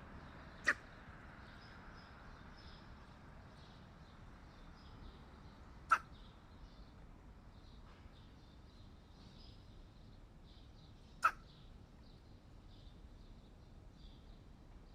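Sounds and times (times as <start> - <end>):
crow sneezing: 11.2 - 11.4.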